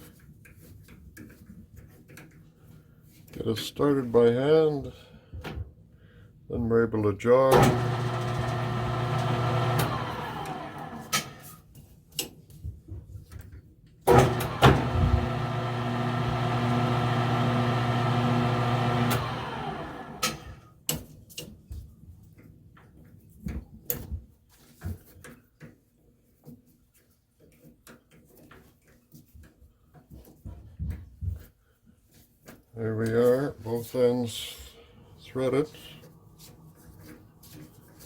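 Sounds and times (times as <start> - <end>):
lathe motor humming: 7.6 - 11.4, 14.1 - 20.6.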